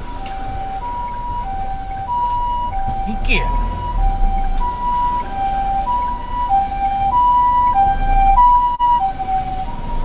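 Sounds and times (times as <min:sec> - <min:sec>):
low vehicle rumble: 0:00.0 - 0:10.0
two-tone ambulance siren: 0:00.0 - 0:10.0.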